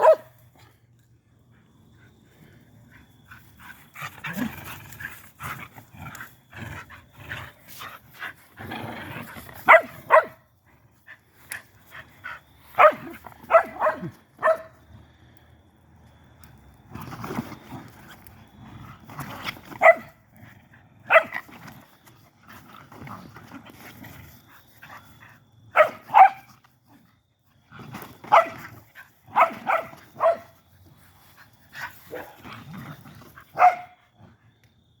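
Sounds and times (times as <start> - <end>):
dog barking: 0.0 - 0.4, 9.7 - 10.4, 12.8 - 14.7, 19.8 - 20.1, 21.1 - 21.4, 25.7 - 26.5, 28.3 - 28.6, 29.3 - 30.5, 33.5 - 34.0.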